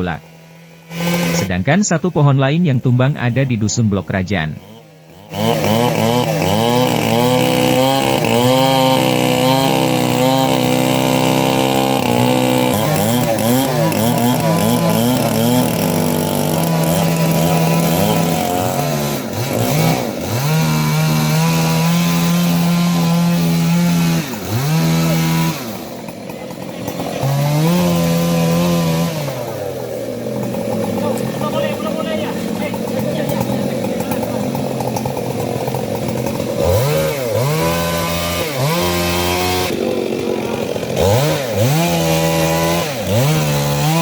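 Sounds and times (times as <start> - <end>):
chainsaw cutting wood: 0.0 - 44.0.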